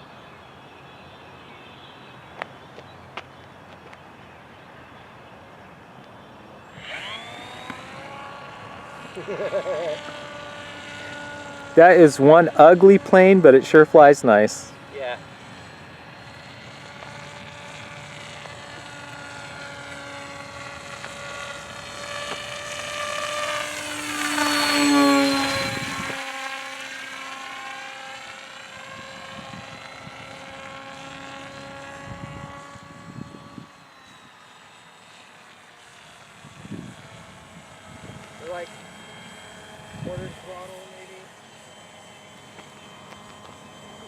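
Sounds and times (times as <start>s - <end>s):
model airplane flying past: 0.0s - 44.0s.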